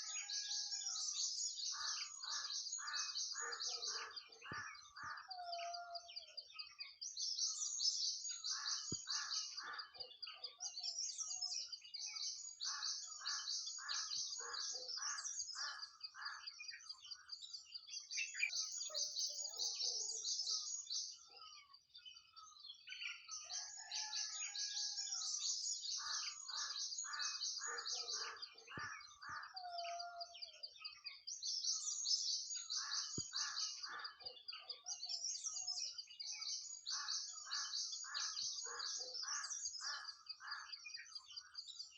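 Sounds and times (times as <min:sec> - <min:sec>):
nightingale singing: 0:00.0 - 0:41.9.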